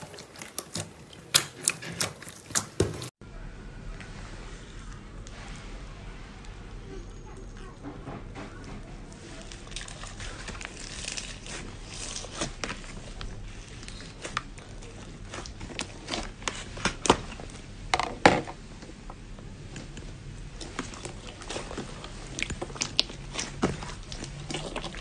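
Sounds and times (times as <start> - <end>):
hands squishing slime: 0.0 - 3.2, 9.2 - 17.7, 19.6 - 25.0.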